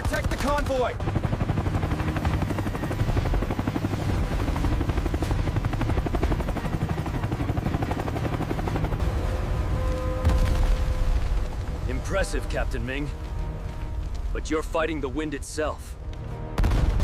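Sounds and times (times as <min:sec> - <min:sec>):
helicopter rotors beating: 0:00.0 - 0:17.0
low engine drone: 0:01.4 - 0:12.1.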